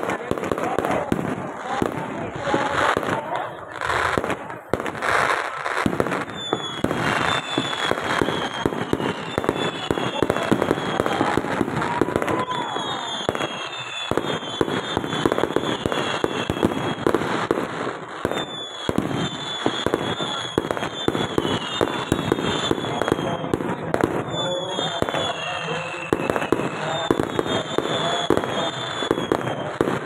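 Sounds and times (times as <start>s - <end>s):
fireworks crackling and popping: 0.0s - 30.0s
high falling whistles: 6.2s - 11.2s, 12.4s - 16.7s.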